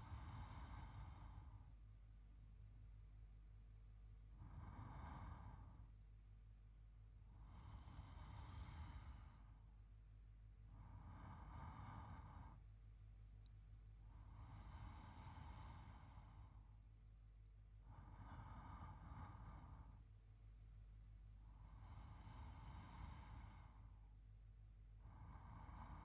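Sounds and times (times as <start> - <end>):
man breathing in sleep: 0.0 - 1.8, 4.3 - 5.9, 7.3 - 9.6, 10.7 - 12.7, 14.0 - 16.8, 17.8 - 20.0, 21.4 - 24.0, 25.0 - 26.0
low steady hum: 0.0 - 26.0.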